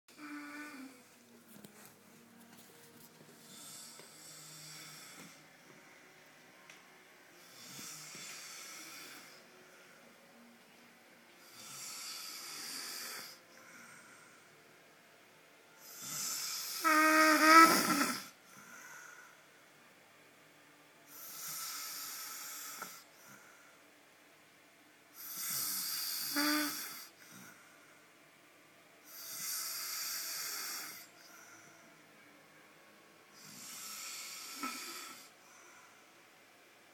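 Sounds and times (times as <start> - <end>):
man snoring: 3.5 - 5.4, 7.4 - 9.4, 11.4 - 13.4, 15.8 - 18.4, 21.1 - 23.1, 25.2 - 27.5, 29.0 - 31.3, 33.4 - 35.3.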